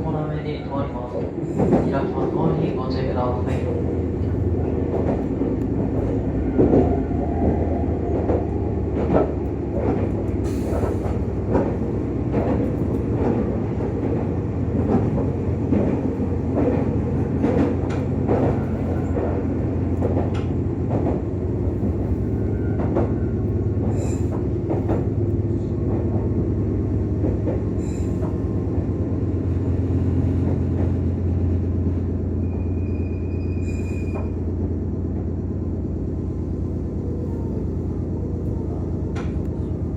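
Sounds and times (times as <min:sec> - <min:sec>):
electric train hum: 0:00.0 - 0:39.9.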